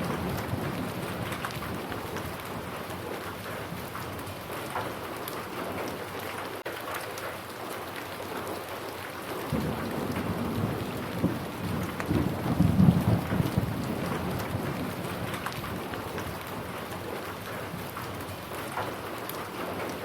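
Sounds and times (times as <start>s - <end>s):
low rumble of thunder: 0.0s - 4.3s, 9.5s - 18.3s
steady rain falling: 0.0s - 20.0s.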